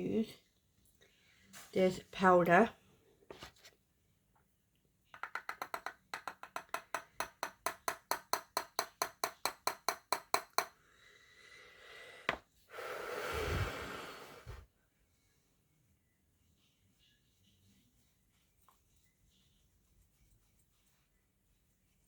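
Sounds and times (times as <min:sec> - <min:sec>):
breathy hiss: 0:10.9 - 0:14.7.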